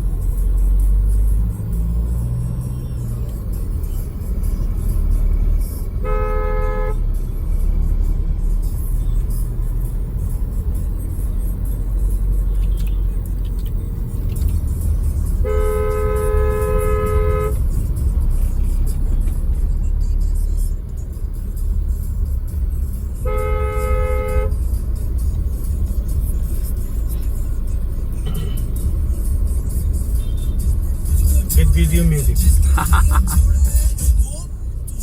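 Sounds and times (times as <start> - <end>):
low rumble of engines: 0.0 - 35.0
vehicle horn honking: 5.9 - 7.2, 15.3 - 17.8, 23.1 - 24.8, 30.1 - 30.8.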